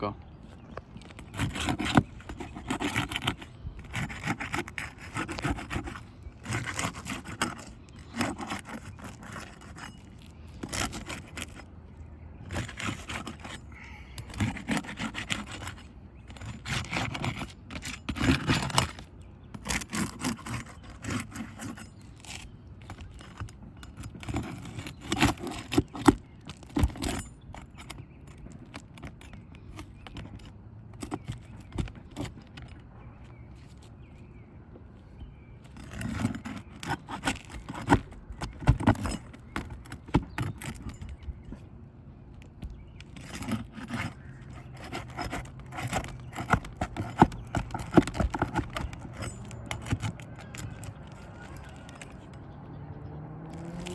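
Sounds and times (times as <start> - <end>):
hard object scraping a surface: 1.1 - 11.7.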